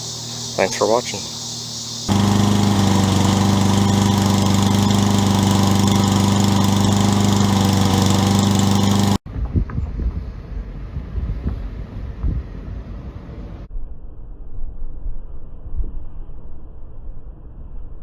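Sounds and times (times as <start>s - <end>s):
lawn mower engine running: 2.1s - 9.2s.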